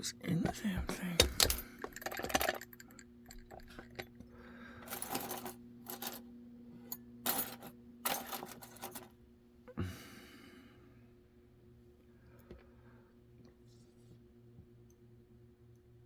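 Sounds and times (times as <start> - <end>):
faint steady hum: 0.0 - 16.0
metal parts clinking: 0.4 - 4.2, 4.8 - 6.2, 7.3 - 9.1.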